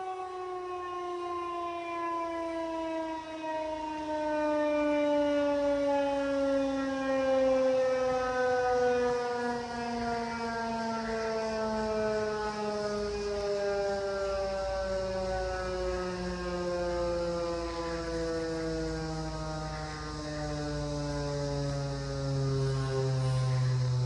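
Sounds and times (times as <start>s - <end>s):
warning sirens winding down: 0.0s - 24.0s
low hum: 21.0s - 24.0s.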